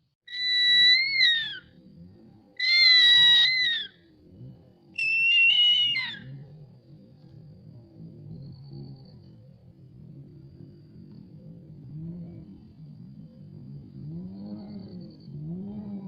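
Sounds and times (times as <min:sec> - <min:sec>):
eagle whistled calls: 0:00.3 - 0:01.6, 0:02.6 - 0:03.9, 0:05.0 - 0:06.3.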